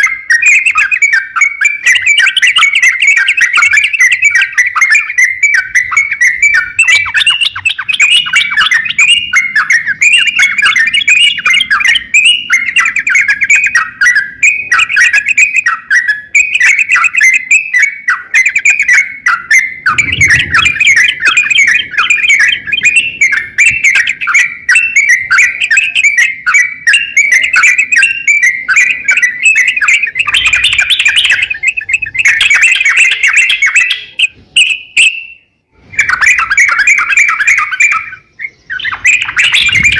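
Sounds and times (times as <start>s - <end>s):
bulbul singing: 0.0s - 39.9s
low thud: 19.9s - 21.5s.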